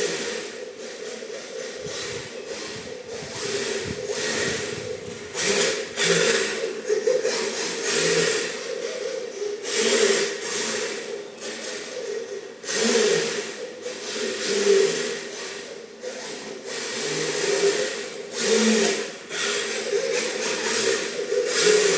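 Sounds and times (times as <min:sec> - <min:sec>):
electric motor whining: 0:01.6 - 0:06.8
tyres hissing as they slide: 0:01.7 - 0:06.6.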